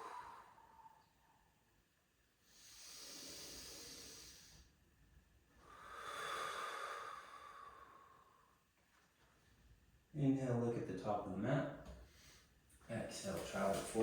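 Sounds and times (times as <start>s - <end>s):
person breathing slowly: 0.0s - 1.3s, 2.5s - 4.7s, 5.6s - 8.6s.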